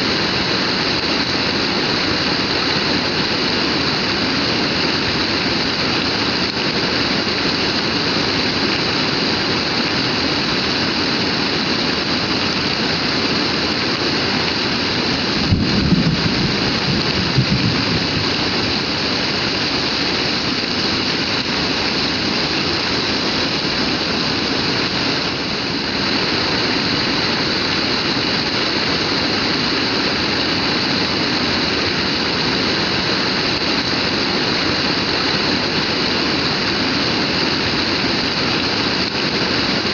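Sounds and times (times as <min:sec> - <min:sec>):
heavy rain pouring: 0:00.0 - 0:39.9
low rumble: 0:15.4 - 0:19.0.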